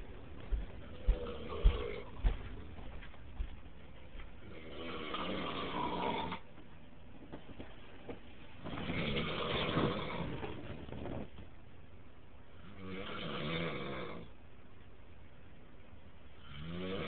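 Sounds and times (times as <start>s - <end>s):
man snoring loudly: 4.5s - 6.4s, 8.8s - 10.4s, 12.7s - 14.3s, 16.4s - 17.0s.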